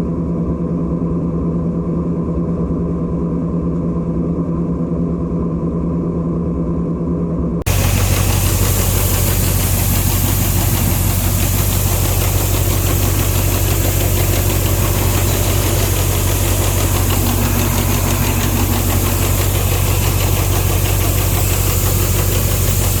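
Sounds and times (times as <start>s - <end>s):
large diesel engine running: 7.7s - 23.0s.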